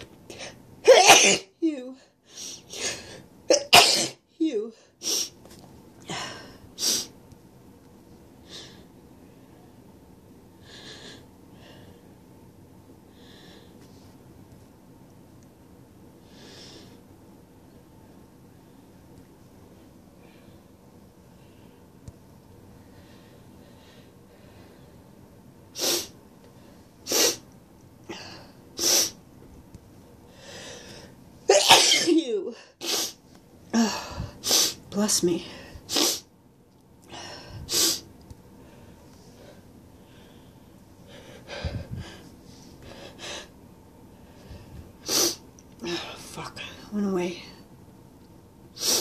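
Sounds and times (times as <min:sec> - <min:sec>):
loud sneeze: 0:00.8 - 0:01.5, 0:03.5 - 0:04.2, 0:27.1 - 0:27.4, 0:31.5 - 0:33.2, 0:35.9 - 0:36.3
soft breathing: 0:13.0 - 0:14.2, 0:22.7 - 0:25.2, 0:30.2 - 0:31.2, 0:37.0 - 0:45.1
person sniffing: 0:25.8 - 0:26.2, 0:28.8 - 0:29.2, 0:35.9 - 0:36.3
nose sniffing: 0:35.9 - 0:36.2.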